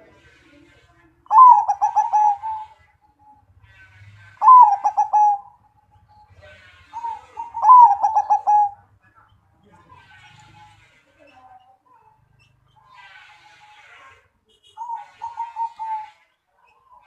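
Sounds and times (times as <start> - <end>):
dove cooing: 1.3 - 2.9, 4.4 - 5.8, 6.9 - 8.9, 14.8 - 16.2.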